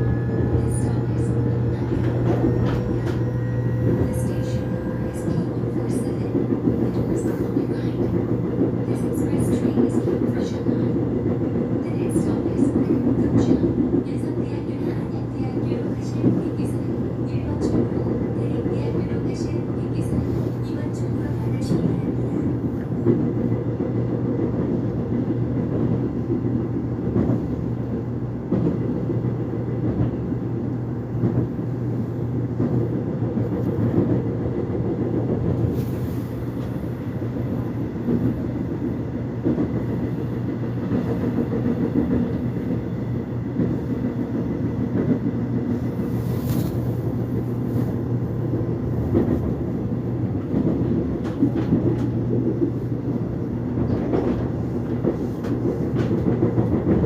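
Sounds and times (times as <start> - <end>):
subway train rumbling: 0.0 - 57.0.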